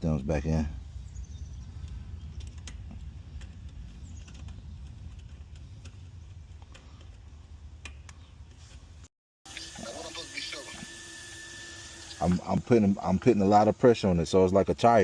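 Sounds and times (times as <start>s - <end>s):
steady low rumble: 0.6s - 9.1s.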